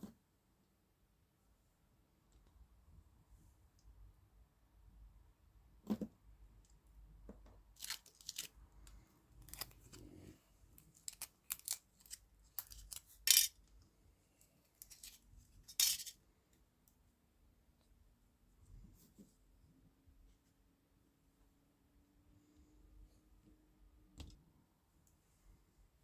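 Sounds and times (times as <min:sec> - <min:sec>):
plastic wrappers crinkling and tearing: 0:07.8 - 0:08.6.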